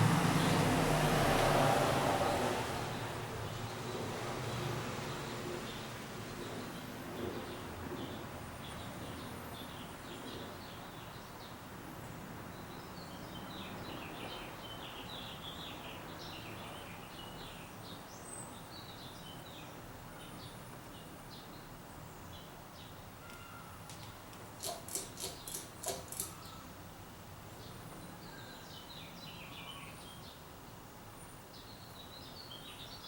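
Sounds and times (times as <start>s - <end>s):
ceiling fan whirring: 0.0s - 6.5s
small birds chirping: 5.7s - 26.8s
sharp clicks: 23.3s - 26.4s.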